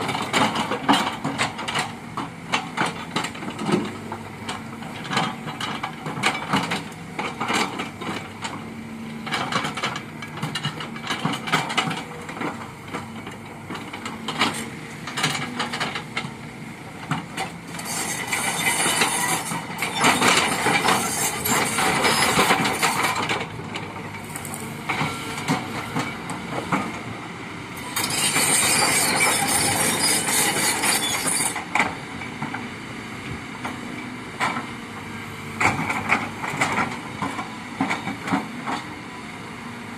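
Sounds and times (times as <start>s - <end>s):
diesel engine running: 0.0s - 30.8s
knocks and clanks of excavator: 0.0s - 39.9s.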